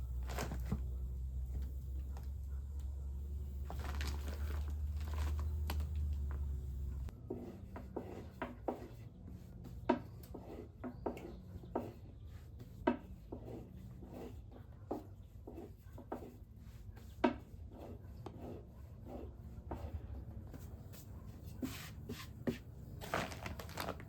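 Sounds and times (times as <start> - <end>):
low steady hum: 0.0 - 7.3.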